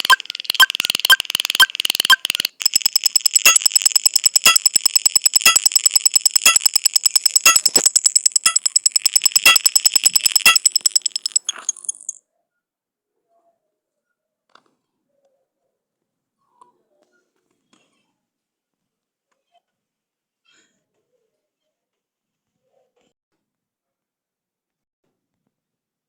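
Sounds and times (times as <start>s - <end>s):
electronic ticking with pops: 0.0s - 12.2s
high bell-like ringing tone: 2.6s - 12.2s.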